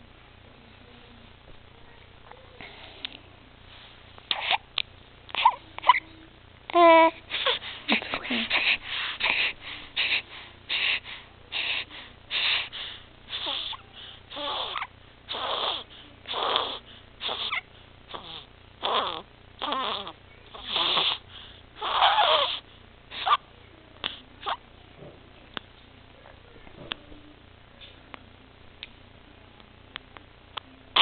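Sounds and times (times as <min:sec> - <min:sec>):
baby noisy breathing: 0:04.3 - 0:04.6, 0:05.3 - 0:06.0, 0:06.7 - 0:23.4.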